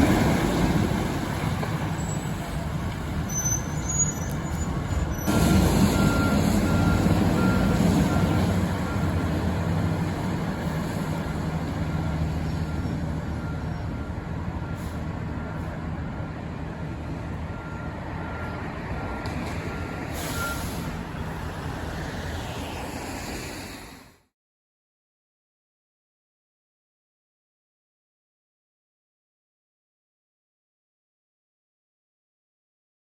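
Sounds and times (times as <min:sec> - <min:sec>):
diesel engine running: 0:00.0 - 0:22.0
reversing alarm beeping: 0:05.2 - 0:09.8, 0:10.7 - 0:21.2.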